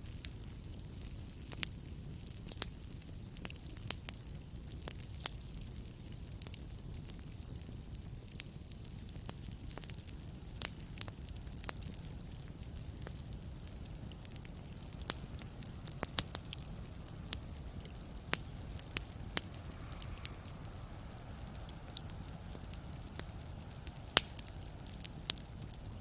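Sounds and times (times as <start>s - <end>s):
fire crackling and popping: 0.0s - 26.0s
low steady rumble: 12.7s - 26.0s.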